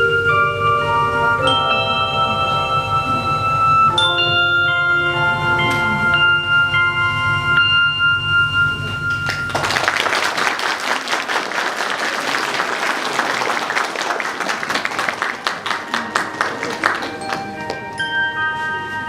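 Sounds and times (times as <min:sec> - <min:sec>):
bell-like music over bass: 0:00.0 - 0:09.6, 0:17.1 - 0:19.0
audience applause: 0:09.2 - 0:17.8.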